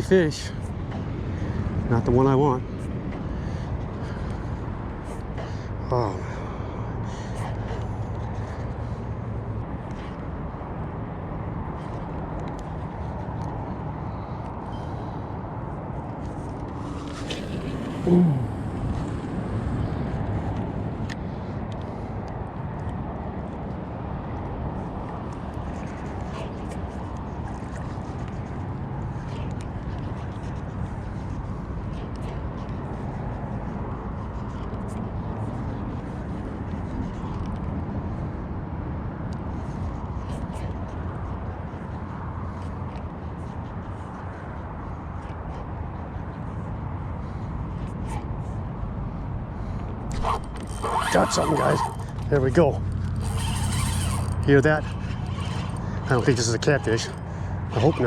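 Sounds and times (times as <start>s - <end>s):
wind buffeting microphone: 0.0s - 58.0s
man saying ooh: 18.0s - 18.6s.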